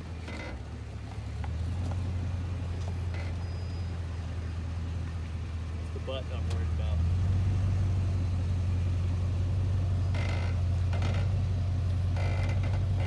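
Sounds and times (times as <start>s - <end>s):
engine running low: 0.0s - 13.0s
vehicle body creaking: 0.1s - 4.6s, 9.9s - 13.0s.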